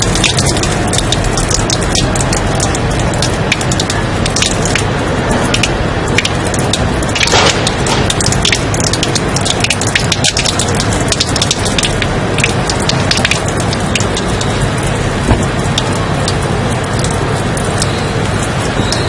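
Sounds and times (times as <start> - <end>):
loud white noise hiss: 0.0 - 19.0
sharp crackles and ticks: 0.0 - 19.0
strong knock: 15.3 - 15.5.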